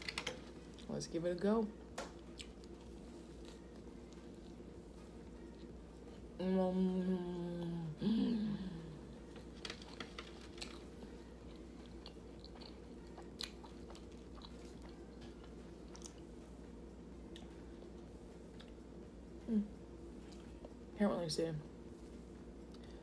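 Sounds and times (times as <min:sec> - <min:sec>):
person chewing pastry: 0:02.2 - 0:06.4, 0:09.4 - 0:16.6, 0:17.2 - 0:18.8
person humming: 0:06.4 - 0:09.3.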